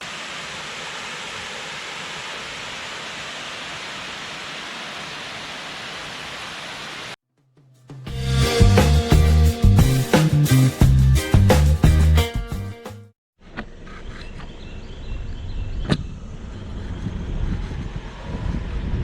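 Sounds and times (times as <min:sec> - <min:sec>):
rushing water: 0:00.0 - 0:07.2
music: 0:07.4 - 0:13.1.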